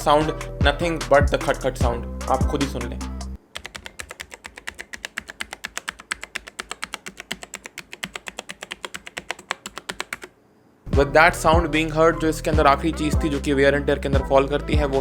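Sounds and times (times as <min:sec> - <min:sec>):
fast typing on keyboard: 0:03.4 - 0:10.4.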